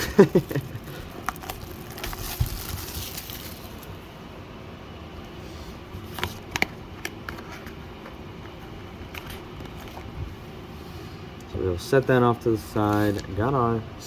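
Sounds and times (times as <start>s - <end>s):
papery packaging rustle: 0.5s - 4.0s.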